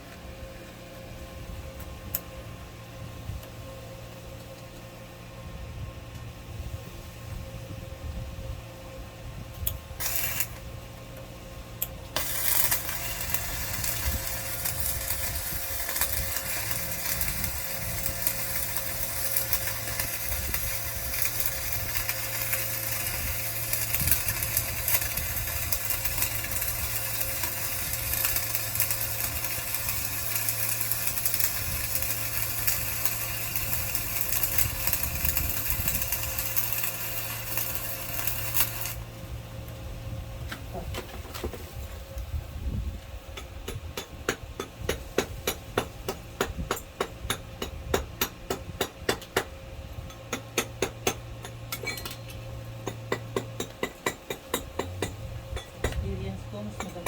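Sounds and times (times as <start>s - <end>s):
welder machine hum: 0.0s - 57.0s
welding arc crackling: 9.7s - 10.7s, 11.8s - 39.2s.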